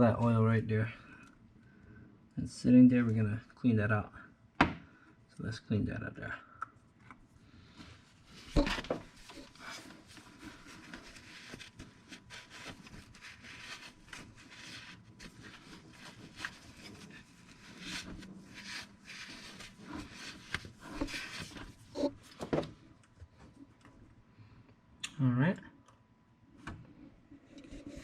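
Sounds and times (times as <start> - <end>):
rag rubbing and scrubbing: 8.5 - 22.2.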